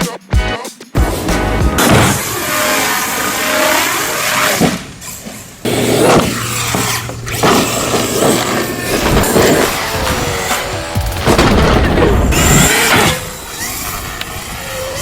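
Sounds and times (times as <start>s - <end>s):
tyre and drivetrain rush: 1.0s - 15.0s
rc car electric motor whining: 1.7s - 15.0s.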